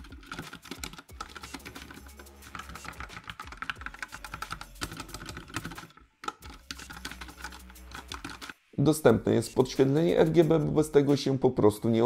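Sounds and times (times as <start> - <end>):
mechanical keyboard typing: 0.0 - 8.6.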